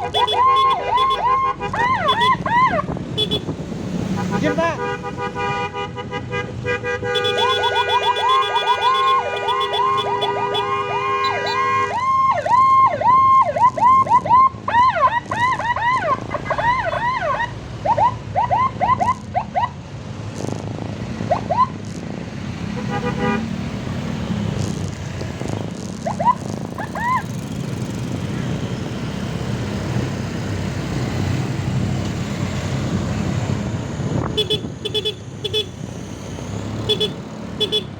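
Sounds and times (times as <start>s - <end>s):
vehicle horn: 0.0s - 2.4s, 3.1s - 12.0s, 22.8s - 23.6s, 34.3s - 35.7s, 36.8s - 37.9s
road and engine noise: 0.0s - 37.9s
electronic siren yelping: 0.1s - 3.0s, 7.6s - 19.8s, 21.2s - 21.8s, 26.0s - 27.4s.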